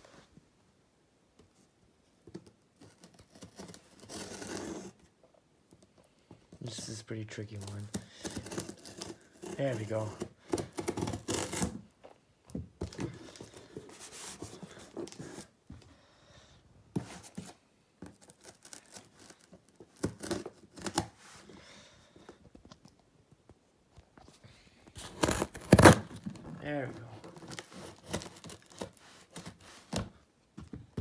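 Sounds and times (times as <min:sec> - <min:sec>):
wrapping paper tearing and crinkling: 0:06.8 - 0:11.7, 0:18.2 - 0:21.1, 0:25.0 - 0:29.9.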